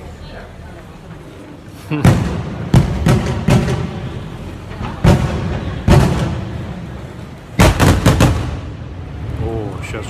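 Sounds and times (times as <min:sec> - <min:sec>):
fireworks exploding: 0:02.0 - 0:07.0, 0:07.6 - 0:09.0.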